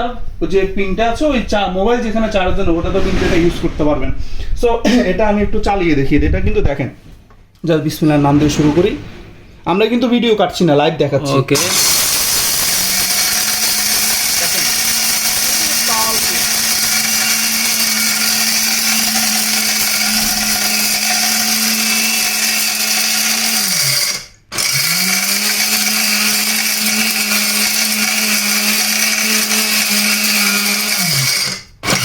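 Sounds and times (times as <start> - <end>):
electric spice grinder whirring: 11.6 - 32.0.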